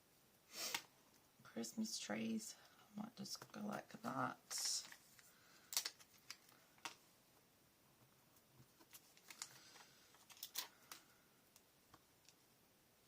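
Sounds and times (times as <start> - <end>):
paper handling: 8.6 - 11.1.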